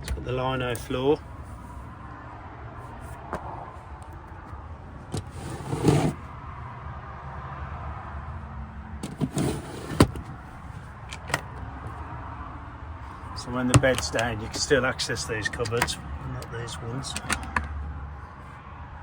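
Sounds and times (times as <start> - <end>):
short scraping sounds: 5.2 - 6.2.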